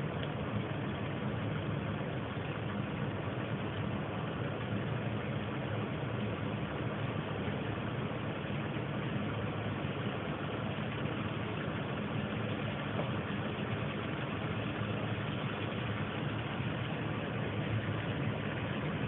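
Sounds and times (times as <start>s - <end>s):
low hum: 0.0s - 19.0s.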